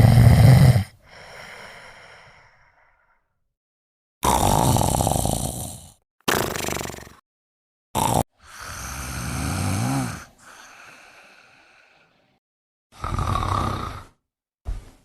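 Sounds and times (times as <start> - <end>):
snoring: 0.0 - 1.0, 4.2 - 7.2, 8.0 - 12.2, 12.9 - 14.2.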